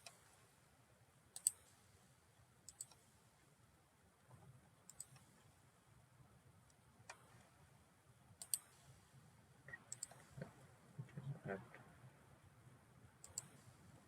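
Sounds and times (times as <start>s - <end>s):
faint room hiss: 0.0s - 14.0s
computer mouse clicking: 1.3s - 1.7s, 2.7s - 3.1s, 4.9s - 5.3s, 6.7s - 7.4s, 8.4s - 8.8s, 9.7s - 10.5s, 13.2s - 13.7s.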